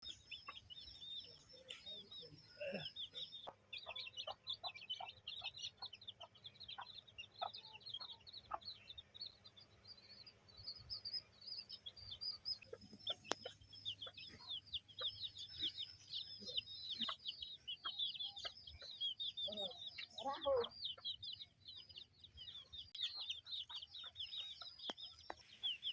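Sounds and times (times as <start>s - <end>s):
flock of birds peeping: 0.0s - 25.9s
soft ticks: 13.1s - 13.6s.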